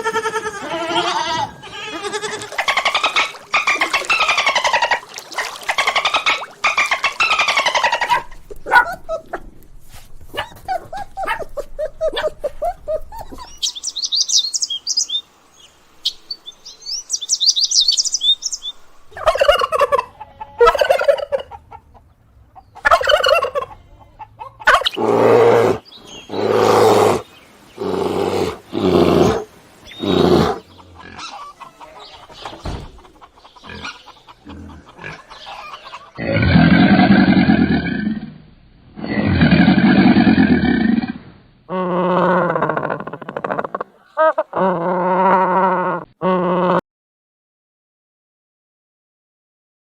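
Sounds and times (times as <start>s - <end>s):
poultry calling: 0.0s - 9.3s, 19.2s - 36.4s
loud deep animal call: 27.8s - 31.6s, 33.6s - 46.8s.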